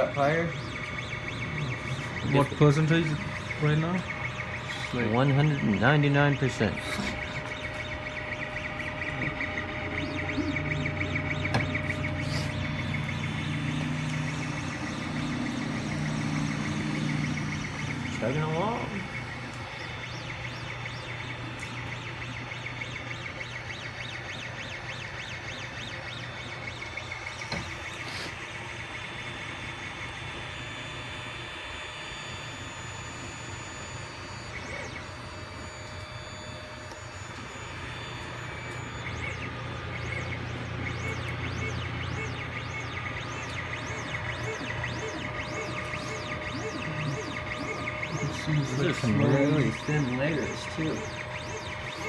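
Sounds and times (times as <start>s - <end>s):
steady low hum: 0.0s - 31.4s, 32.1s - 52.0s
high whining tones: 0.0s - 52.0s
stepper motors chirping: 0.0s - 52.0s.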